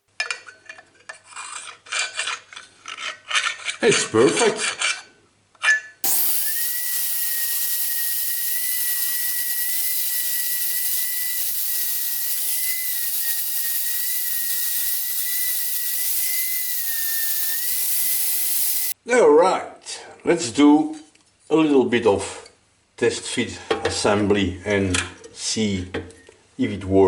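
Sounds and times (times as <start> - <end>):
power tool motor whining: 6.0 - 19.0.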